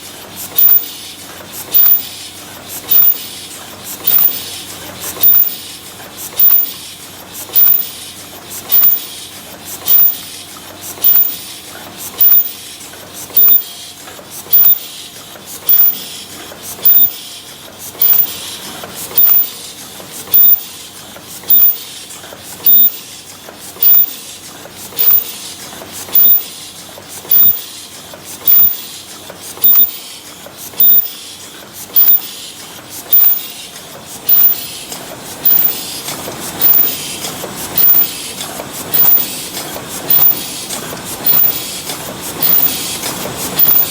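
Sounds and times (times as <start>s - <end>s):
paper cup machine clattering: 31.6s - 43.9s.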